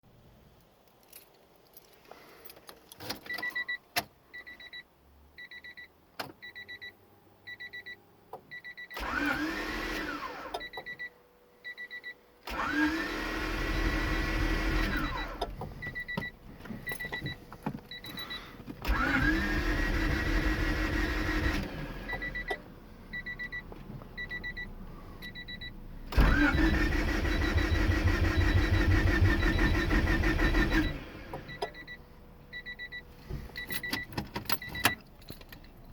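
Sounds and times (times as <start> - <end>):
car warning chime beeping: 3.2 - 9.4, 10.1 - 35.5
starter motor cranking engine: 9.0 - 10.3, 12.5 - 15.5, 18.8 - 22.4, 26.1 - 31.6.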